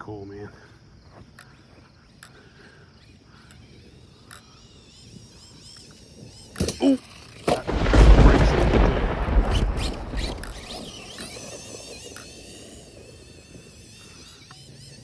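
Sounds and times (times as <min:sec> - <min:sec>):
electric motor whine: 0:01.4 - 0:15.0
loud rush of noise: 0:07.6 - 0:12.9.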